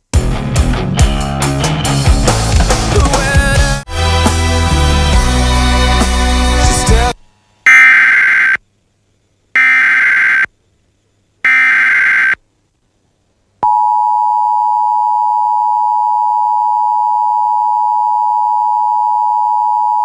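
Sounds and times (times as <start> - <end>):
steady two-tone alert signal: 11.5 - 12.4.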